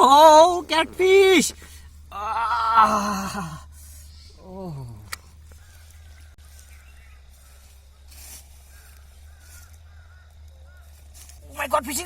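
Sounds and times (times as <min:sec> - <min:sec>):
steady low hum: 0:00.0 - 0:12.0
faint warbling bird calls: 0:03.6 - 0:12.0.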